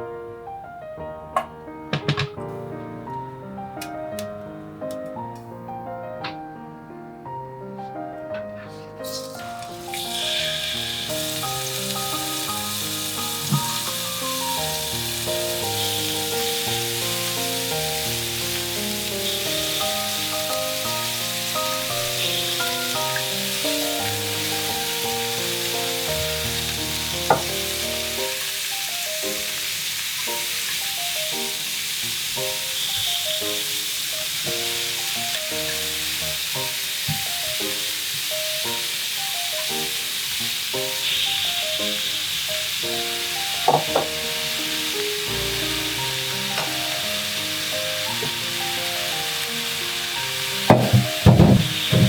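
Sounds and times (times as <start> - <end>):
sharp knocks: 1.4 - 2.5, 27.3 - 27.7, 50.7 - 52.0
food sizzling in a frying pan: 9.0 - 52.0.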